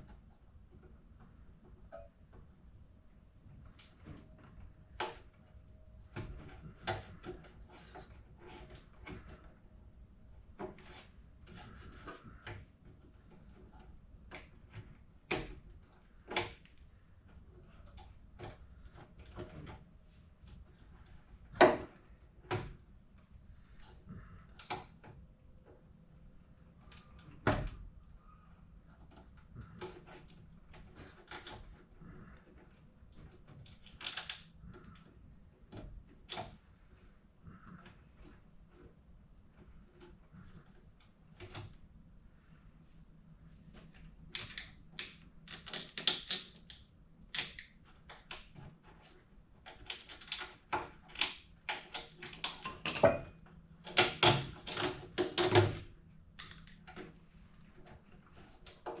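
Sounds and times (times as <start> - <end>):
hands working with tools: 0.0 - 42.7, 43.5 - 59.0.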